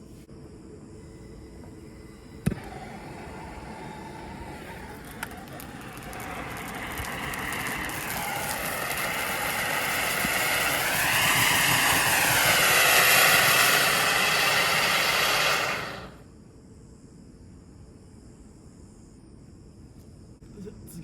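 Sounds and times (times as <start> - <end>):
firework fountain hissing: 1.0 - 16.2.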